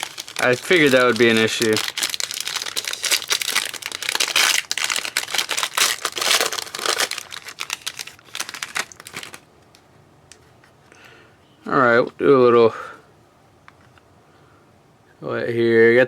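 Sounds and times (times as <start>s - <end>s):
packaging crinkling and tearing: 0.0s - 9.8s.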